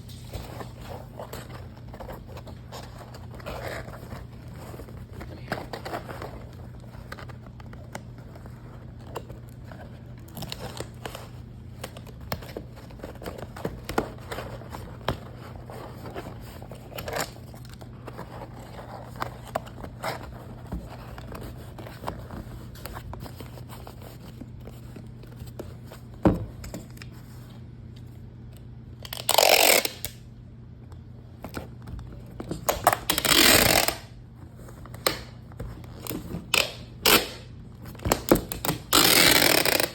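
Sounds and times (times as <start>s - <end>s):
paper rustling and tapping: 0.0s - 27.2s.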